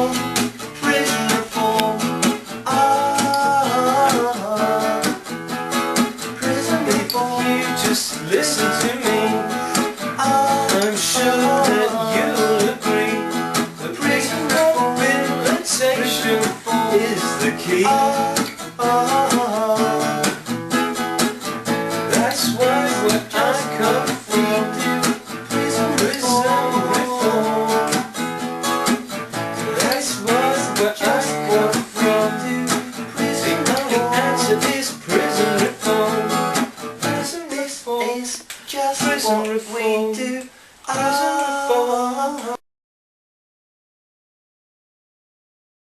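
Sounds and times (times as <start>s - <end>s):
acoustic guitar strumming: 0.0s - 42.6s.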